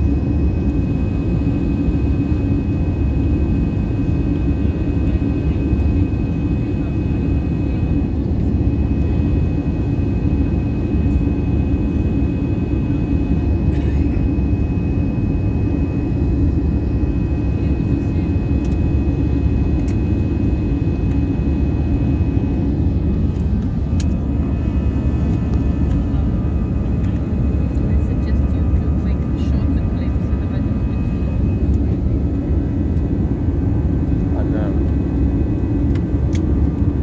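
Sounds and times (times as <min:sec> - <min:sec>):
jet engine and airflow rumble: 0:00.0 - 0:37.0
faint clicks in cabin: 0:18.6 - 0:18.9, 0:19.8 - 0:20.0, 0:23.3 - 0:24.2, 0:25.3 - 0:26.0, 0:31.7 - 0:32.0, 0:35.6 - 0:36.9.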